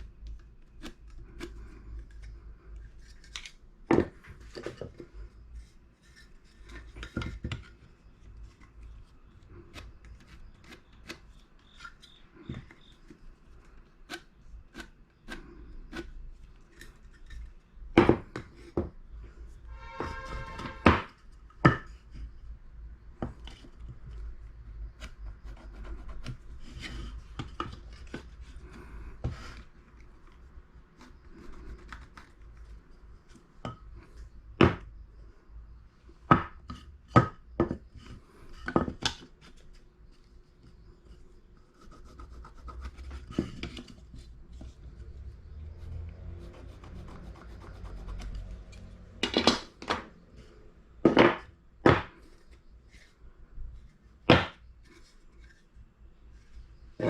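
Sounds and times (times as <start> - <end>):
wood rubbing and scraping: 36.7 - 57.0
wood knocking on wood: 51.0 - 52.2, 54.3 - 54.6.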